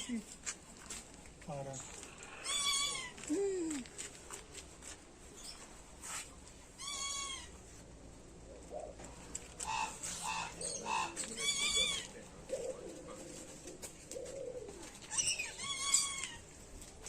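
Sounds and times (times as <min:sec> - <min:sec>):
bird calling: 0:09.6 - 0:12.8.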